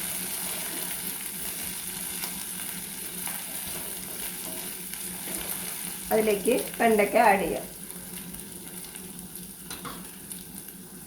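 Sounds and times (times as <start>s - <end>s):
stirring scrapes in a pan: 0.0s - 6.1s
onions sizzling in hot oil: 0.0s - 11.0s.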